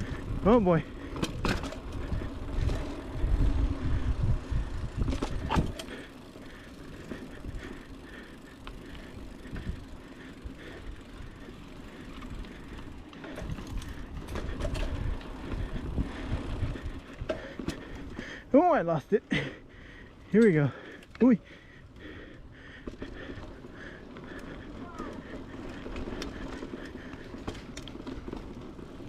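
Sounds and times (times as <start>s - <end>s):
wind buffeting microphone: 1.3s - 5.8s, 13.4s - 17.4s.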